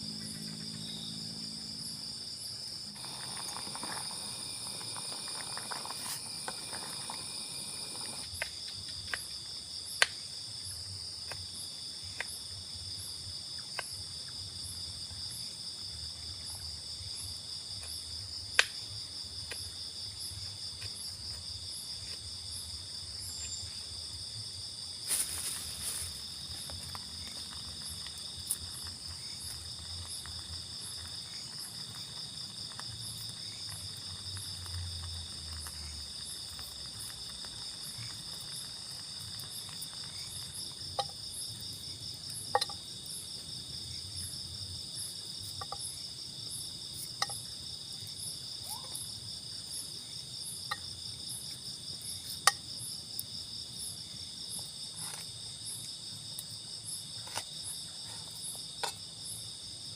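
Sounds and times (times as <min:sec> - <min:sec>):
insects trilling: 0:00.0 - 0:59.9
rustling: 0:25.0 - 0:40.6.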